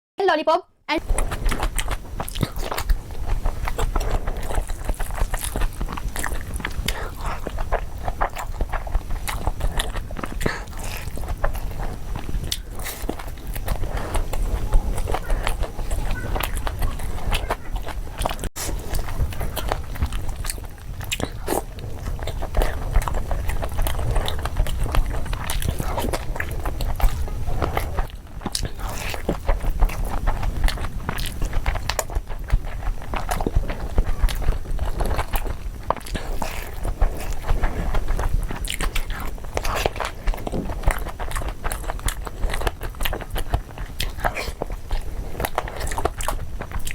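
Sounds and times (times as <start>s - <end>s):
wet mouth sounds: 0.9s - 46.9s
chewing and biting food: 1.0s - 46.9s.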